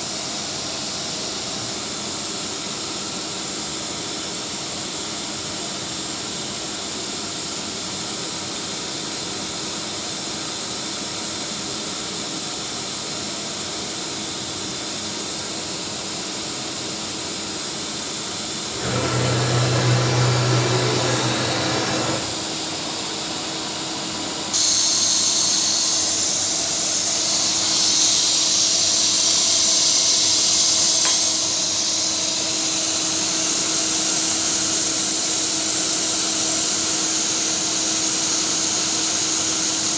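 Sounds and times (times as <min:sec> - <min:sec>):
cnc router hissing: 0:18.7 - 0:22.6.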